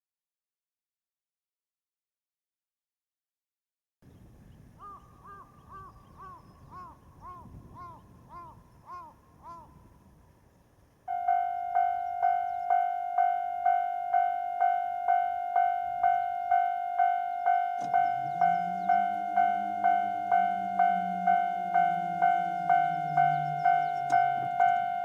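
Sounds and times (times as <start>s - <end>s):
level crossing bell ringing: 11.1s - 25.0s
low hum rising in pitch: 11.3s - 25.0s.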